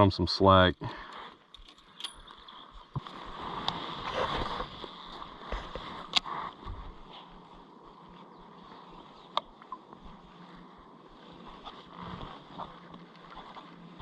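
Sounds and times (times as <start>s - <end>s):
moving water: 8.0s - 14.0s
light ticks: 9.3s - 9.8s.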